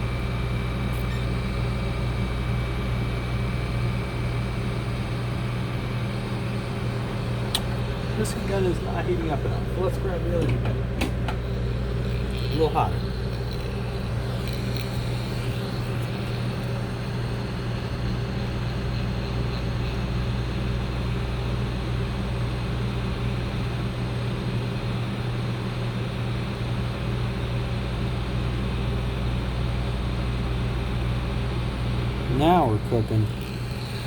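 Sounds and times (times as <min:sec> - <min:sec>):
heat gun blowing: 0:11.0 - 0:20.1.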